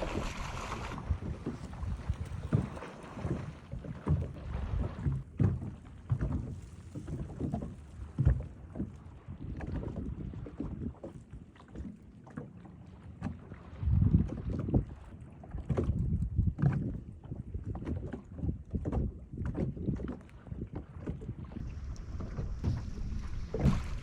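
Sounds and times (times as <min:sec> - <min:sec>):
wind on microphone: 0:00.0 - 0:05.6, 0:13.8 - 0:24.0
knocks and thumps in boat: 0:00.0 - 0:24.0.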